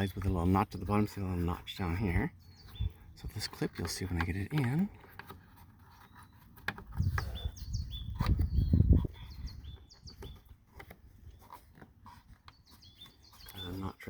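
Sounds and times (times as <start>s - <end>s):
bird chirping: 0.0s - 14.0s
handling noise: 0.0s - 14.0s.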